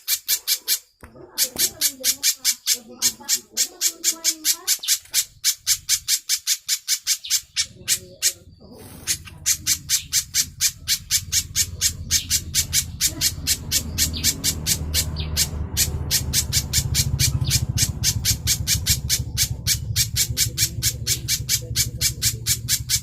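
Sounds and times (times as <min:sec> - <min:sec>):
bird calling in sharp chips: 0:00.0 - 0:23.0.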